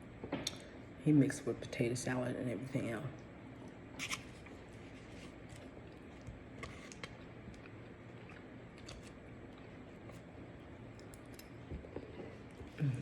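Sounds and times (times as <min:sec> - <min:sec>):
faint chewing clicks and smacks: 0:05.5 - 0:12.8.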